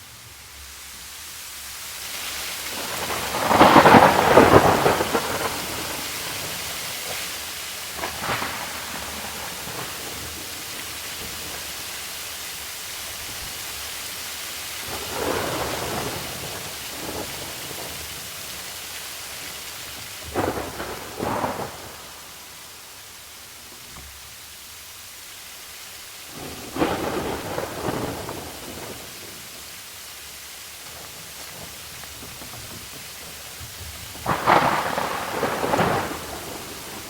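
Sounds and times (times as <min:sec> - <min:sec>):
rain hissing: 0:00.0 - 0:37.0
thunder peals: 0:02.7 - 0:11.9, 0:14.8 - 0:18.7, 0:19.3 - 0:23.0, 0:26.3 - 0:29.6, 0:30.9 - 0:37.0.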